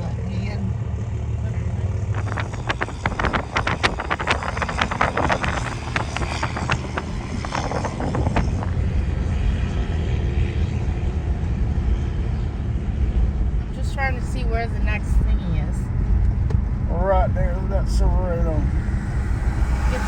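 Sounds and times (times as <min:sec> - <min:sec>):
car engine and road rumble: 0:00.0 - 0:20.0.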